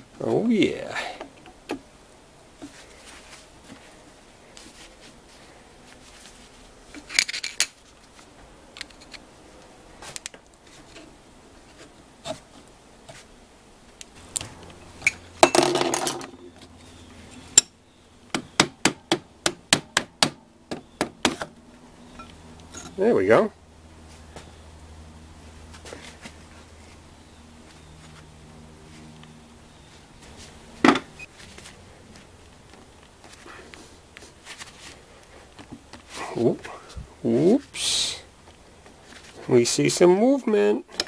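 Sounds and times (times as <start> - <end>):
metal parts clicking: 7.0 - 7.8, 8.7 - 9.2.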